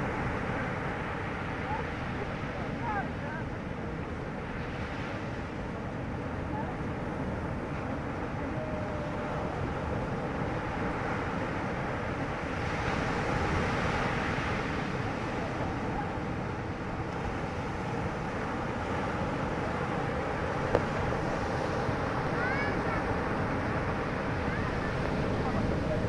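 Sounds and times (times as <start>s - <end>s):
wind buffeting microphone: 6.8s - 26.0s
motorboat engine running: 20.4s - 26.0s.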